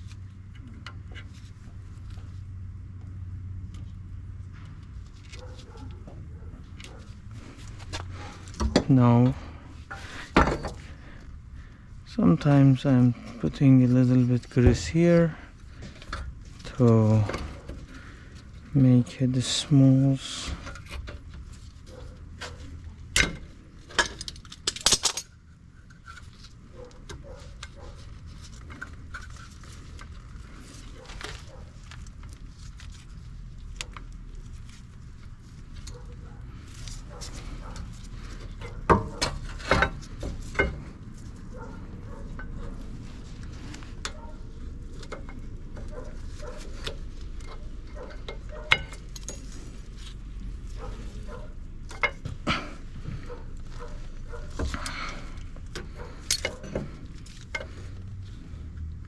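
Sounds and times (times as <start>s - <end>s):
metal parts clinking: 23.2s - 26.3s, 56.1s - 57.7s.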